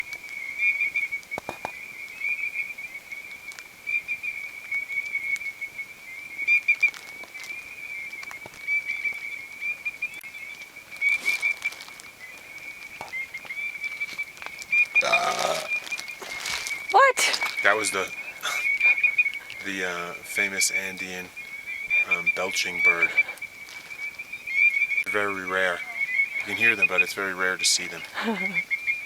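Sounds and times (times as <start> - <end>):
short rustle: 15.3 - 17.7.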